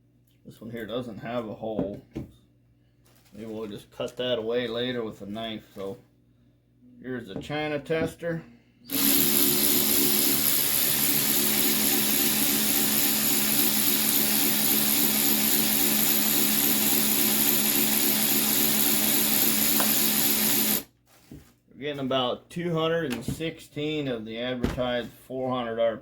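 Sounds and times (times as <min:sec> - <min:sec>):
cordless ratchet motor whine: 0:08.9 - 0:20.9.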